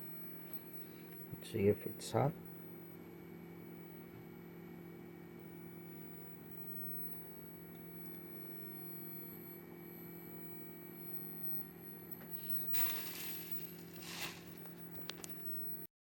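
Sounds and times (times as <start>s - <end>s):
low electrical hum: 0.0s - 15.8s
faint high whine: 0.0s - 15.9s
rustling scrapes: 12.7s - 14.8s.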